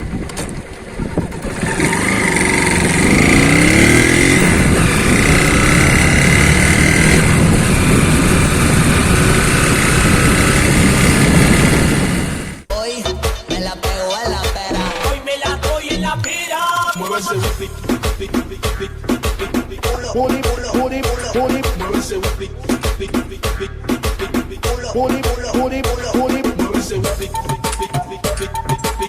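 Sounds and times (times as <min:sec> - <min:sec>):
engine rattle: 0:00.0 - 0:12.7
motorcycle engine running: 0:00.0 - 0:12.7.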